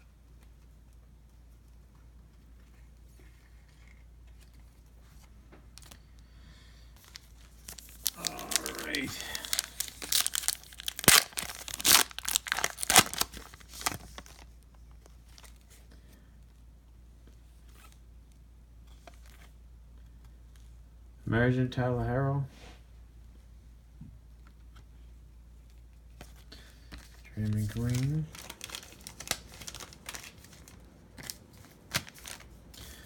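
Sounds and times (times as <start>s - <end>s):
plastic wrapper tearing and crinkling: 7.0s - 14.6s, 27.4s - 33.0s.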